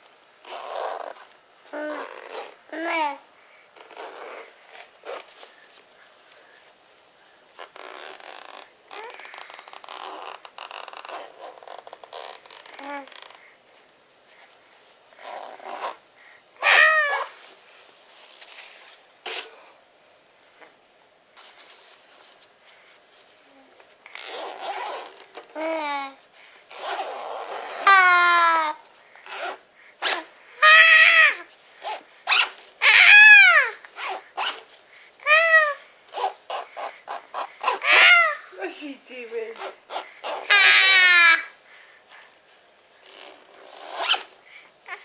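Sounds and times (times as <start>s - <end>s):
zipper pulls: 0.4s - 2.6s, 3.8s - 5.4s, 7.6s - 13.4s, 15.1s - 16.0s, 24.0s - 25.7s, 26.7s - 28.0s, 29.2s - 30.3s, 31.8s - 32.6s, 33.9s - 34.7s, 36.1s - 38.2s, 39.6s - 40.7s, 43.0s - 44.4s
toddler squealing with laughter: 16.6s - 17.4s, 30.6s - 31.4s, 32.8s - 33.8s, 37.7s - 38.5s, 40.3s - 41.5s.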